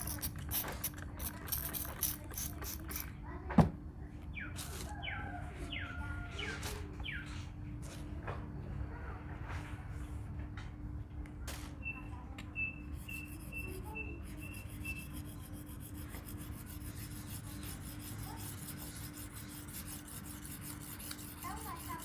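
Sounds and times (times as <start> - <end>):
knife rubbing on whetstone: 0.0 - 3.1, 12.9 - 22.0.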